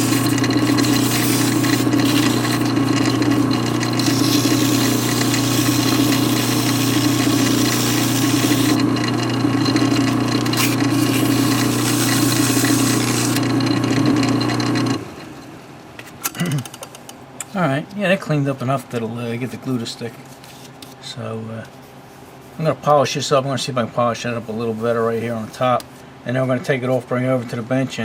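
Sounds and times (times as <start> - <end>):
sandpaper scratching on metal: 0.0 - 2.6, 4.0 - 8.8
lathe humming: 0.0 - 15.1.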